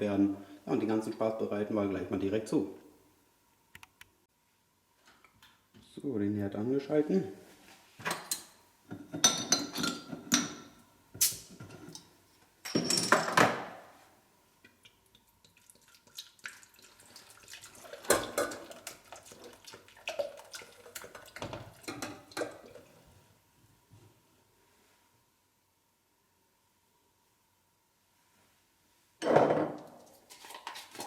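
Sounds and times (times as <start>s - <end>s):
pots and utensils clattering: 9.0s - 10.8s, 17.8s - 19.5s, 20.1s - 22.9s
liquid pouring: 15.1s - 22.9s.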